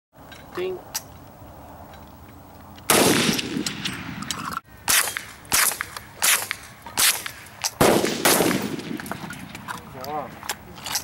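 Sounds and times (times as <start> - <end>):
loud gunshots with echo: 2.9 - 4.2, 4.9 - 9.6
distant gunshots: 2.9 - 4.3, 4.9 - 9.7.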